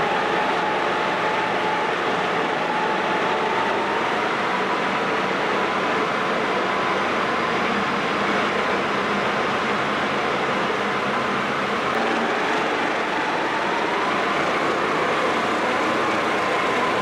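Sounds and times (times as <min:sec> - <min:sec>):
faint steady hum: 0:10.6 - 0:17.0
machinery running: 0:11.4 - 0:17.0.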